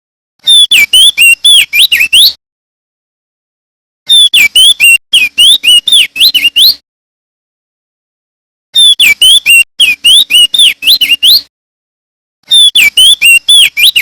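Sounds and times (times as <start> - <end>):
bird singing whistled notes: 0.4 - 2.4, 4.1 - 6.8, 8.8 - 11.5, 12.5 - 14.0.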